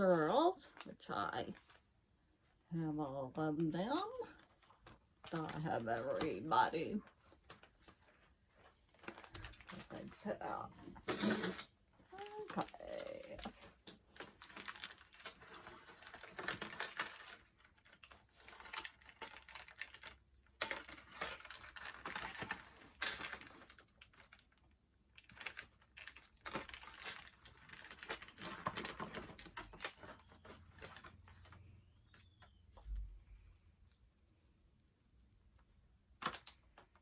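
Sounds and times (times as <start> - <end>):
plastic packaging crinkling: 12.1 - 31.5.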